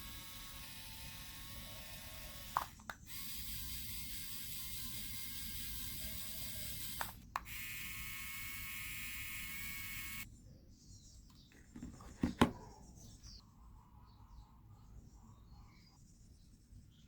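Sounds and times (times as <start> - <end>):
electric fan motor whining: 0.0 - 10.3.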